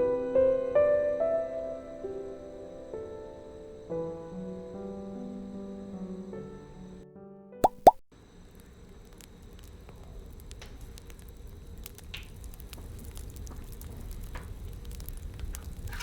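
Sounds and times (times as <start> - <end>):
low rumble of flames: 8.3 - 16.0
bonfire crackling and popping: 9.0 - 16.0.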